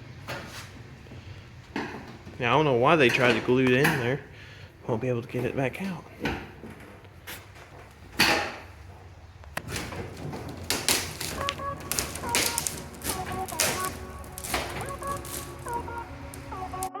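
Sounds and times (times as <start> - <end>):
knocks and clattering on windshield: 9.6 - 16.0
light background music: 10.8 - 17.0.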